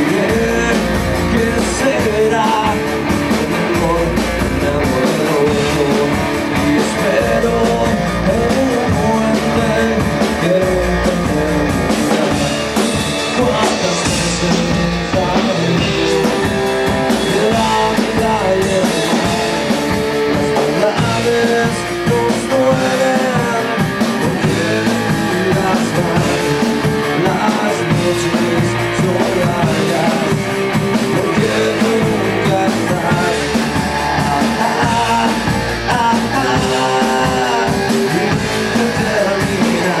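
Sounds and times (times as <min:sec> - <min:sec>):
person singing: 0:00.0 - 0:40.0
rock song: 0:00.0 - 0:40.0.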